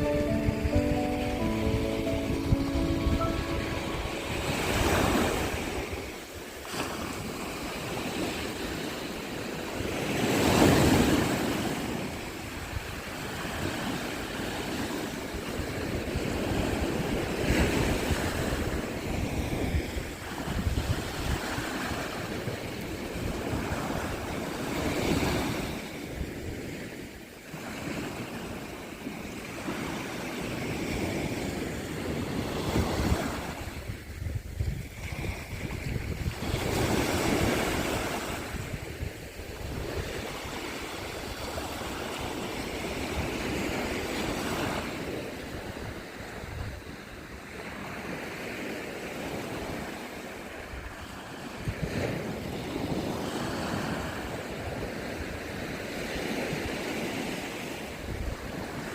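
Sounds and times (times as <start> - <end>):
waves breaking on shore: 0.0 - 58.9
wind buffeting microphone: 4.2 - 26.9, 30.4 - 47.4.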